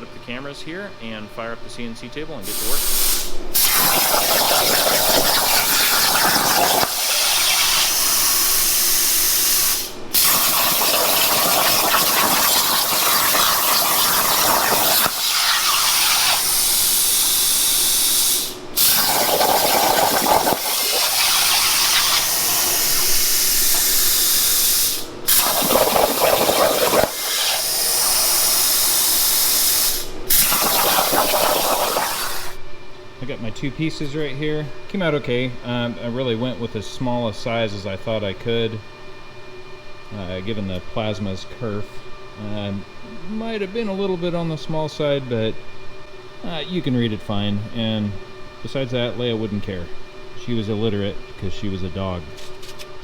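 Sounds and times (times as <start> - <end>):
plasma torch hissing: 2.4 - 32.6.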